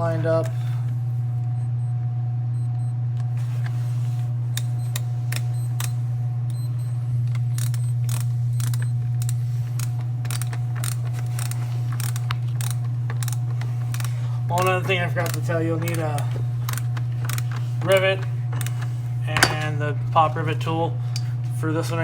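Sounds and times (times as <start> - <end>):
screws clicking and tapping: 7.6 - 18.8.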